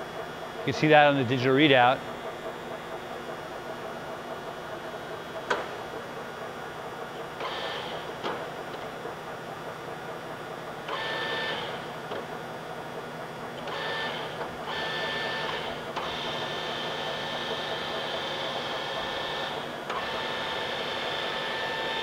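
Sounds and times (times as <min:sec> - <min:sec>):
lathe machine hum: 0:00.0 - 0:22.0
gear-drive whine: 0:09.8 - 0:22.0.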